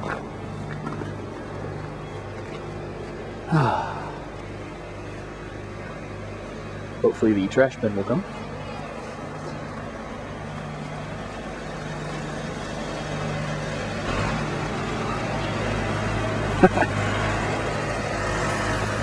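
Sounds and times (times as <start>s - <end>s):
vehicle engine running: 0.0s - 19.0s.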